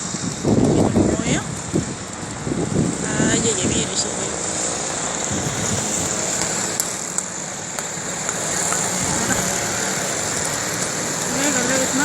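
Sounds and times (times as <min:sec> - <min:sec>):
passing cars: 0:00.0 - 0:12.0
high-pitched hiss: 0:03.0 - 0:12.0.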